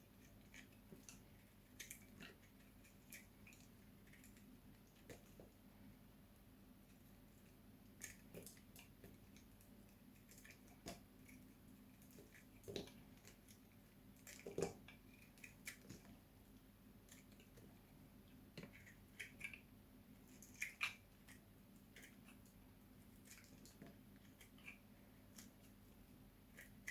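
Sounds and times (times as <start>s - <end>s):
blade cutting dry soap: 7.4s - 16.2s, 26.4s - 26.9s.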